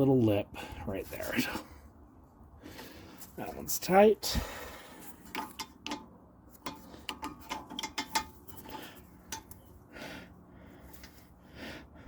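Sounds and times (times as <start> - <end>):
wrench clicking on metal bolt: 5.3 - 9.6.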